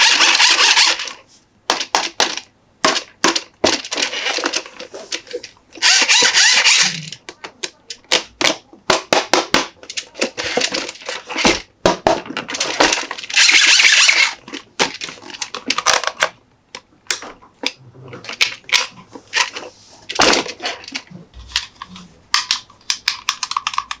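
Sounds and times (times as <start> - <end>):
plastic toys clicking and tapping: 0.0 - 24.0.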